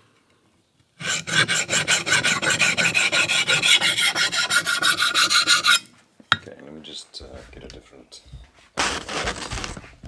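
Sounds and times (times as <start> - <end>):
knife scraping on sharpening hone: 3.1 - 5.9.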